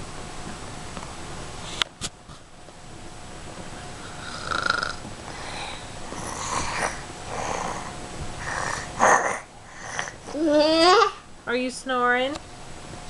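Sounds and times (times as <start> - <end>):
snoring breaths: 4.0 - 10.2.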